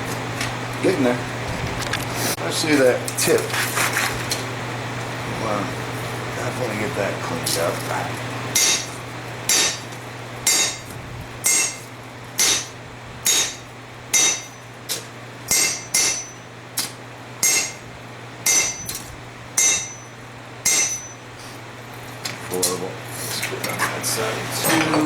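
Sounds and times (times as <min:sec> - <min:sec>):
hammer striking steel on anvil: 0:08.6 - 0:09.9, 0:10.5 - 0:17.8, 0:18.4 - 0:19.0, 0:19.6 - 0:21.2.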